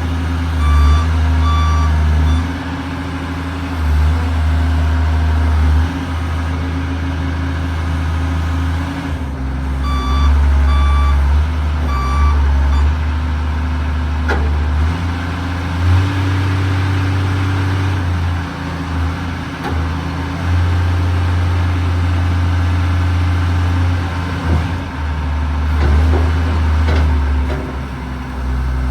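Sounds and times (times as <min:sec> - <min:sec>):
excavator diesel engine humming: 0:00.0 - 0:28.9
travel alarm beeping: 0:00.6 - 0:02.5, 0:09.8 - 0:13.0.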